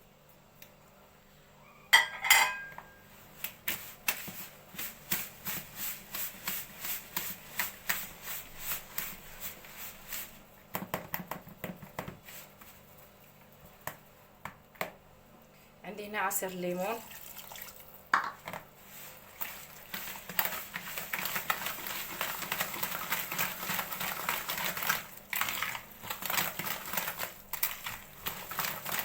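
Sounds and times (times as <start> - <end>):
utensil clinking against bowl: 2.0 - 3.0.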